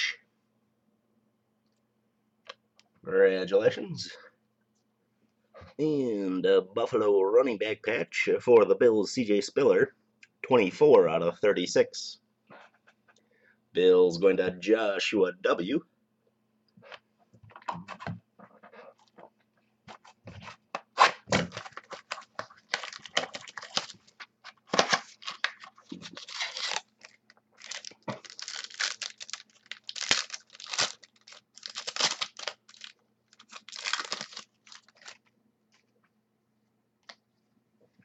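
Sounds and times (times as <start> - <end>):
wrappers tearing and crinkling: 21.0 - 35.3.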